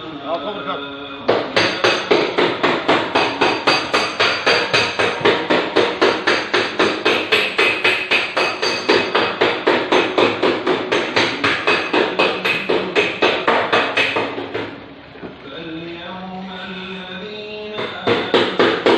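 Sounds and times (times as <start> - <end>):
hammer striking sheet metal: 1.3 - 14.8, 17.7 - 18.9.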